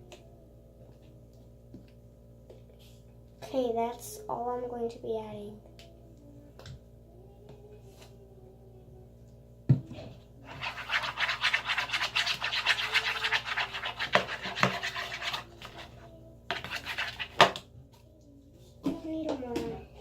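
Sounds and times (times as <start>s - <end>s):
stick stirring slime in bowl: 10.4s - 17.6s.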